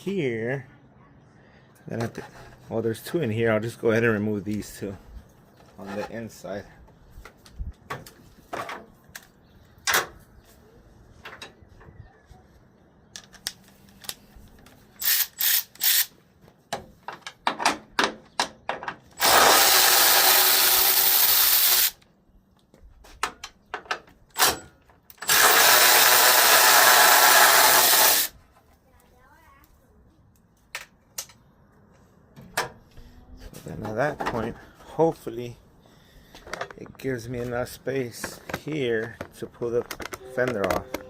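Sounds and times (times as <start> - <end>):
power drill running: 19.2 - 22.0, 25.2 - 28.3.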